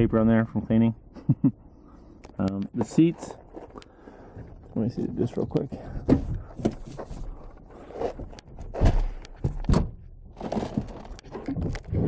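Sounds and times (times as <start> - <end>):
rustling handling noises: 2.2 - 9.7, 10.3 - 12.0
car seats thumping and clunking: 5.8 - 7.4, 8.2 - 11.8.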